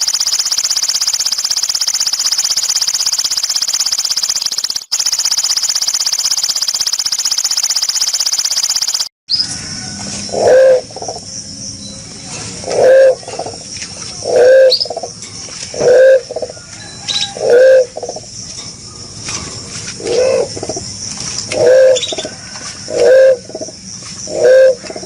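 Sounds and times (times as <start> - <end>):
shrill pulsing high buzz: 0.0 - 13.2
pigeon cooing: 10.3 - 10.9, 12.6 - 13.3, 14.2 - 15.0, 15.7 - 16.6, 17.2 - 18.0, 20.0 - 20.6, 21.6 - 23.6, 24.3 - 25.0.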